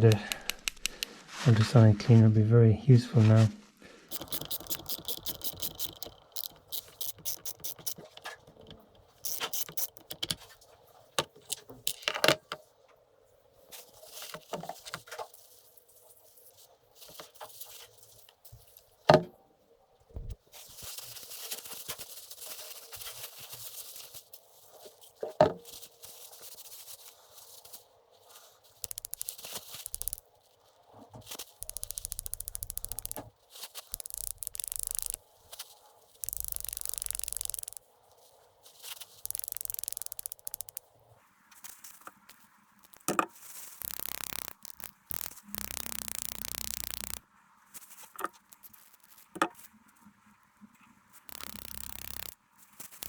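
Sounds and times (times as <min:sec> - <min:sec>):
metal parts rattling and scraping: 0:04.1 - 0:10.5.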